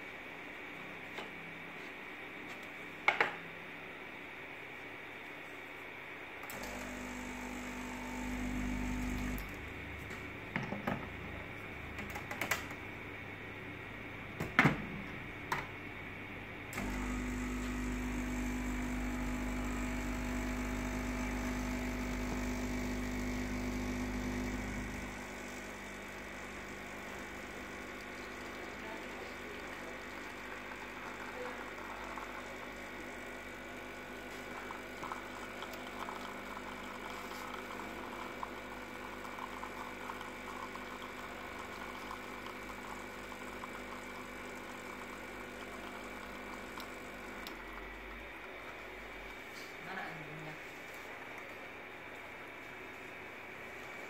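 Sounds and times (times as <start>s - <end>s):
espresso machine pump buzzing: 6.4s - 9.7s, 16.8s - 48.6s.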